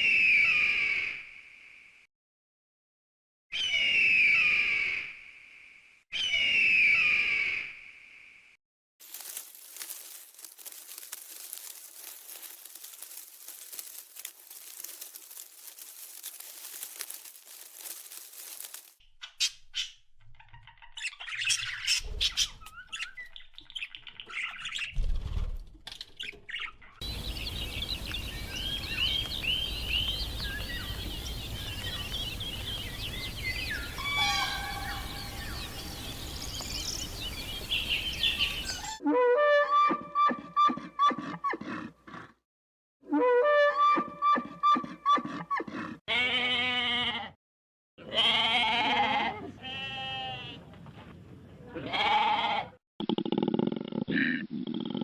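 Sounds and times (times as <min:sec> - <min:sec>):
crackling hiss: 0:09.0 - 0:19.0, 0:27.0 - 0:38.9
background hiss: 0:27.0 - 0:38.8
birds chirping: 0:27.0 - 0:39.0.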